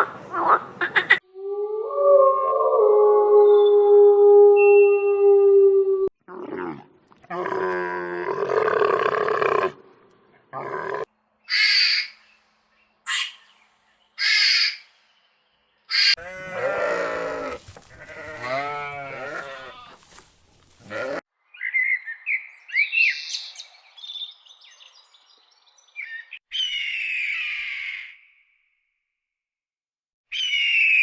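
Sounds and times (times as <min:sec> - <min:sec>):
long wavering bleat: 0:16.2 - 0:20.0, 0:20.8 - 0:21.2.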